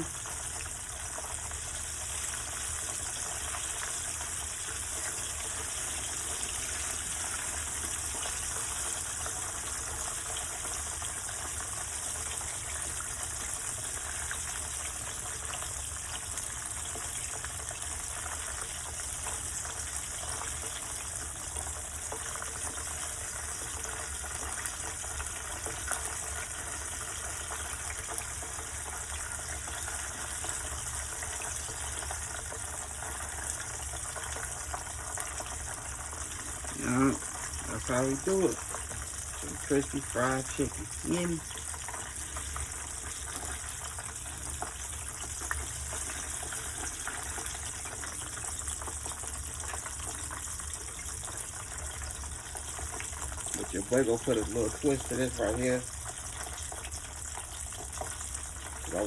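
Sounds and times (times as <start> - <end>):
food deep-frying in oil: 0.0 - 59.0.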